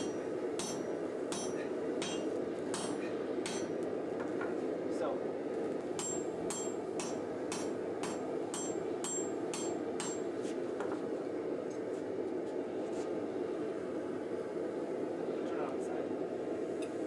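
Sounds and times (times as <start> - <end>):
sledgehammer striking steel on anvil: 0.0 - 3.8, 6.0 - 10.3
metallic ring: 6.0 - 10.2.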